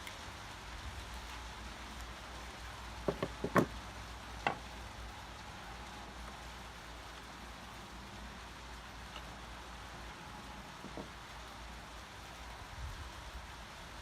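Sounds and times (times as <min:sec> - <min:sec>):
heavy rain hissing: 0:00.0 - 0:14.0
sharp knocks: 0:03.1 - 0:03.7.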